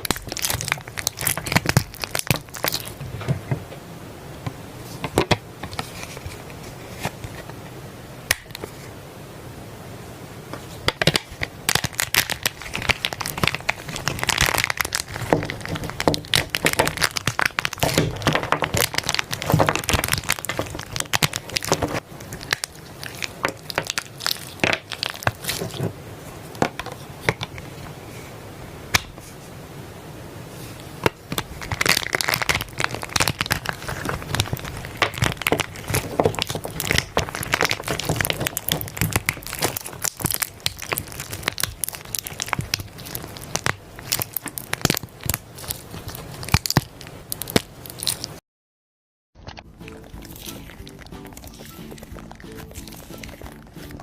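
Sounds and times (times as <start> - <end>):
slime squeezed crackling and popping: 0.0 - 3.0, 10.9 - 25.8, 31.1 - 48.4, 49.4 - 54.0.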